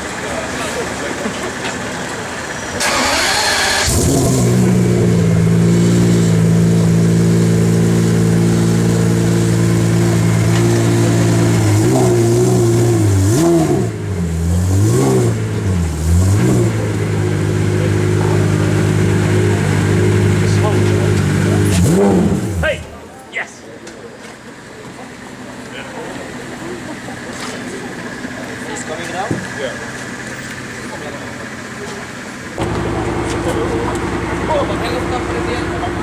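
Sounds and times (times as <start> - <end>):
car engine idling and revving: 0.0 - 36.0
engine cranking: 1.3 - 4.8, 32.6 - 36.0.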